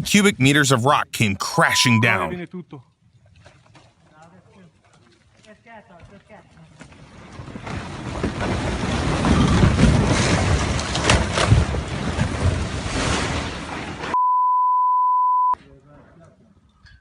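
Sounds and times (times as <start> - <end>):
censor bleep: 14.2 - 15.6.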